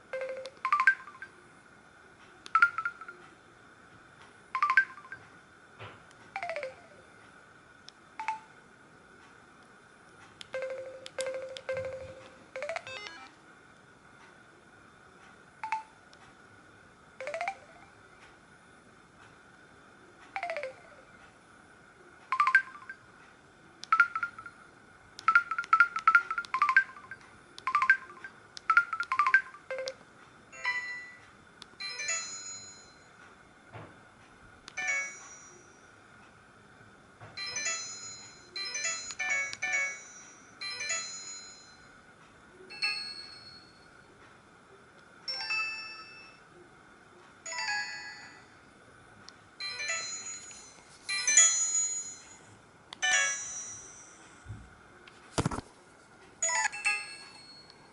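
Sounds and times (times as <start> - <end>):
mobile phone ringtone: 0.1 - 1.3, 2.6 - 3.1, 4.6 - 5.2, 6.4 - 6.9, 10.5 - 13.3, 17.2 - 17.8, 20.4 - 21.0, 22.3 - 23.0, 25.3 - 30.0, 30.6 - 31.2, 34.8 - 35.7, 37.4 - 41.8, 45.3 - 46.4, 47.5 - 48.4, 49.6 - 52.4, 56.4 - 57.6.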